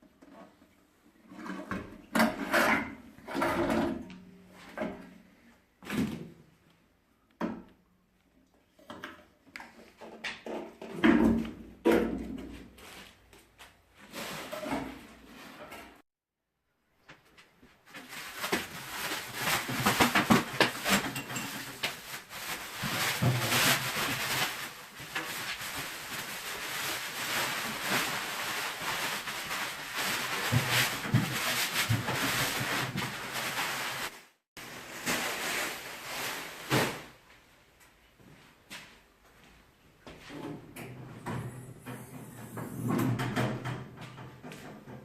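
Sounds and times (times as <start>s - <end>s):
rustling and clatter of unpacking: 17.2s - 37.2s.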